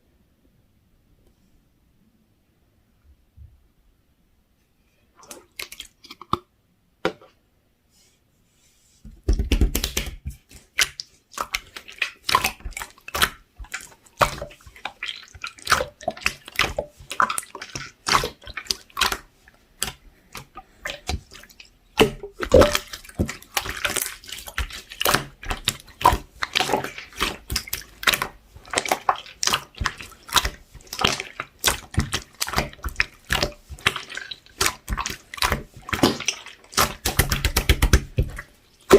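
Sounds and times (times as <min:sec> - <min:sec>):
slime squishing wet clicks: 0:09.5 - 0:38.9.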